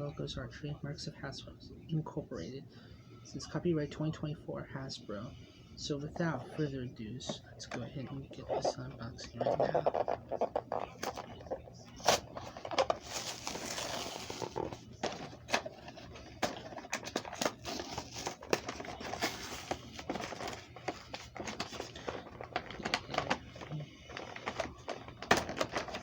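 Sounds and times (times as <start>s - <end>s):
packaging rustling and crinkling: 9.4s - 26.0s.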